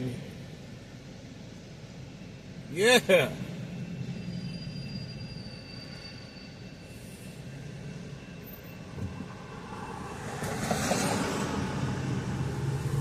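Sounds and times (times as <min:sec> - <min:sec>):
engine rumble: 0:07.2 - 0:13.0
vehicle passing by: 0:09.6 - 0:13.0.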